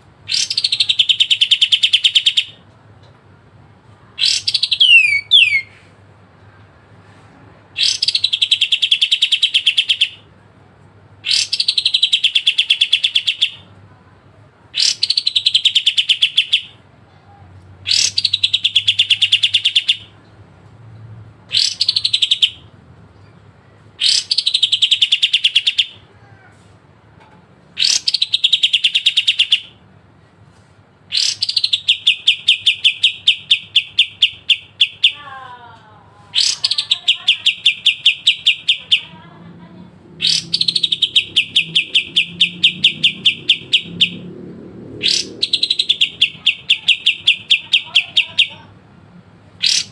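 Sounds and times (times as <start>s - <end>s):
bird singing with rattling trill: 0.3s - 2.6s, 4.2s - 5.7s, 36.4s - 39.1s, 40.2s - 44.3s, 45.0s - 48.6s, 49.6s - 49.9s.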